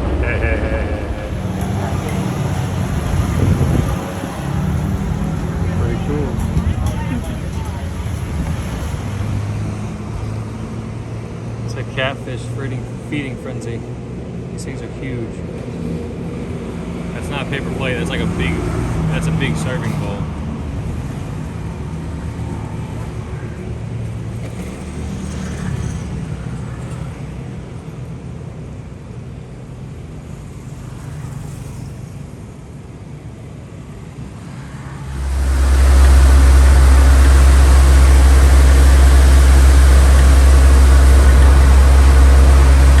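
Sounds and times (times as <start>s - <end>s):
engine running with low hum: 0.0s - 28.2s, 35.0s - 43.0s
outdoor noise: 0.0s - 43.0s.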